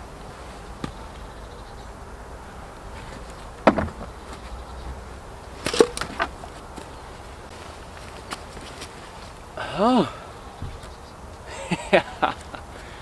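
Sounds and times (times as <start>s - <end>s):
wooden bench knocking and creaking: 3.1s - 5.0s, 5.7s - 6.4s.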